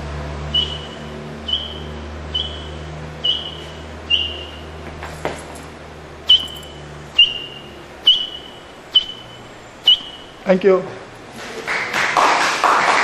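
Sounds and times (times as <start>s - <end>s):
person whistling bird call: 0.5s - 4.6s, 6.3s - 10.4s.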